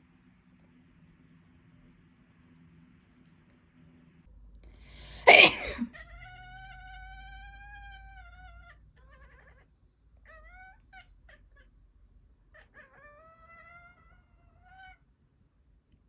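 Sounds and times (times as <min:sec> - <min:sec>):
person sneezing: 0:05.0 - 0:05.9
cat meowing and yowling: 0:05.9 - 0:11.7, 0:12.5 - 0:15.0.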